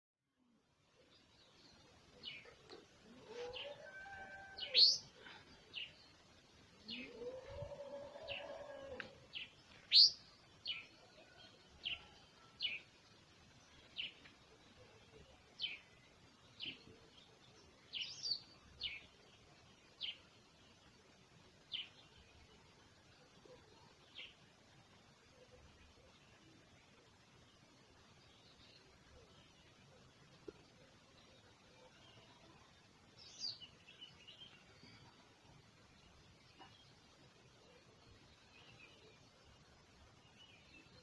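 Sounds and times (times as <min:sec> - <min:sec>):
birds chirping: 0:01.0 - 0:20.8
animal drawn-out call: 0:06.9 - 0:09.1.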